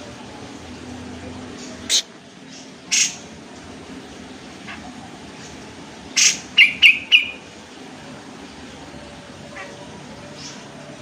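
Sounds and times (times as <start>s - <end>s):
bulbul calling: 1.8s - 3.3s, 6.1s - 7.4s.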